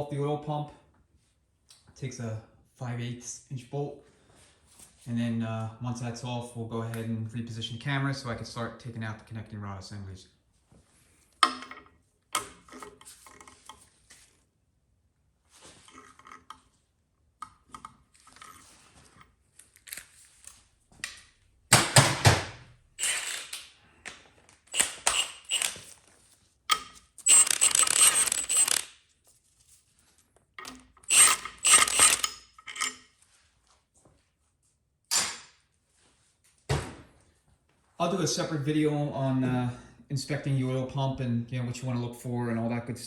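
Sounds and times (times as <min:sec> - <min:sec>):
hand ratchet clicking: 0:23.0 - 0:23.6, 0:24.7 - 0:25.8, 0:26.7 - 0:28.9, 0:30.6 - 0:33.0
metal clinks and clanks: 0:26.7 - 0:28.8, 0:30.6 - 0:33.1.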